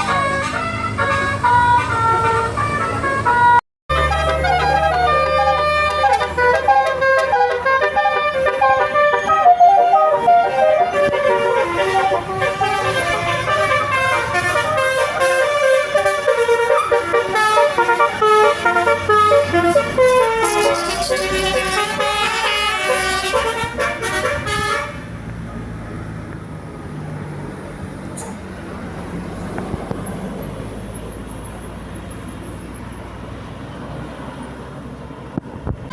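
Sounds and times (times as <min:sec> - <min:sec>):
musical bus horn playing tune: 0:00.0 - 0:25.2
bus engine low rumble: 0:00.0 - 0:35.9.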